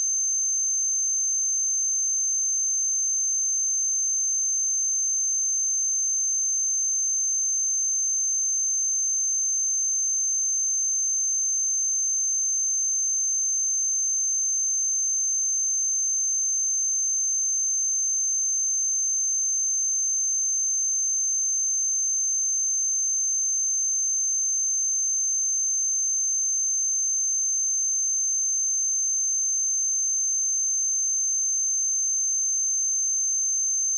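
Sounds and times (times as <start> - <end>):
high-pitched sine test tone: 24.3 - 33.9.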